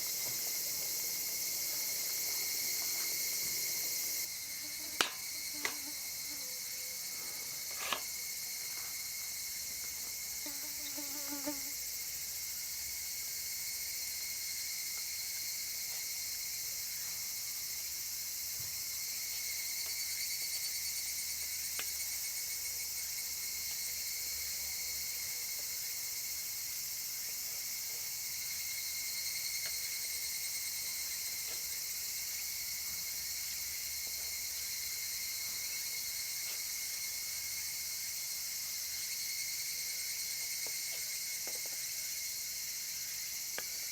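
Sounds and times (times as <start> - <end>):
insects shrilling: 0.0 - 8.5.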